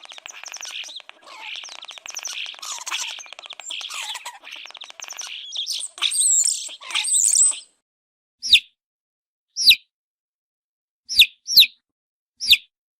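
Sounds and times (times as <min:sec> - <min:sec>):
baby chicks peeping: 0:00.0 - 0:07.7.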